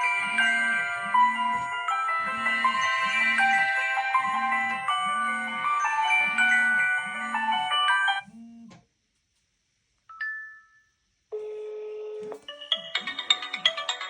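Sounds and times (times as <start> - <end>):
melodic chiming ringtone: 0.0 - 8.2, 12.5 - 14.0
steady beep: 0.0 - 8.2
two-note chime: 0.0 - 8.2
pulsing ringtone: 0.0 - 8.3, 12.5 - 14.0.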